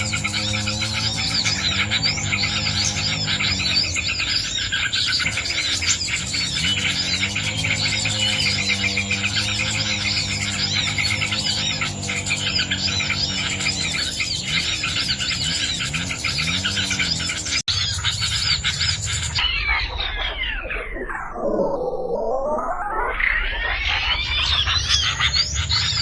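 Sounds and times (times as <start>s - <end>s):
songbirds chirping rapidly: 0.0s - 26.0s
falling electronic sweep: 19.3s - 24.9s.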